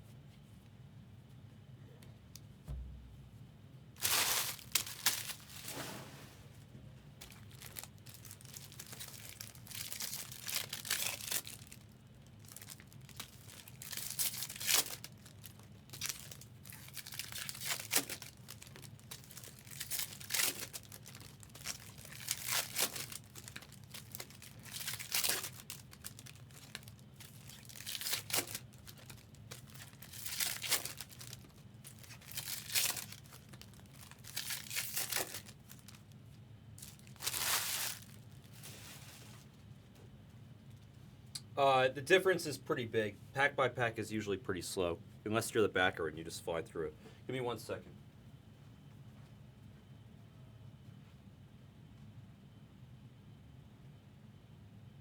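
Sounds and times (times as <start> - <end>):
foil wrappers tearing and crinkling: 4.0 - 5.8, 7.2 - 36.2, 36.8 - 39.5.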